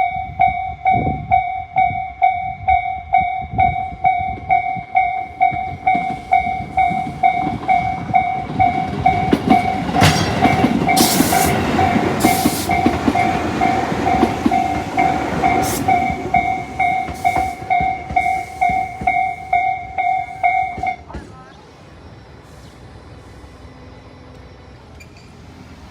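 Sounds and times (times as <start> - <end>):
level crossing warning bell: 0.0 - 21.2
train rumbling past: 0.0 - 25.9
sharp hissing bursts: 11.0 - 13.2, 15.1 - 17.6.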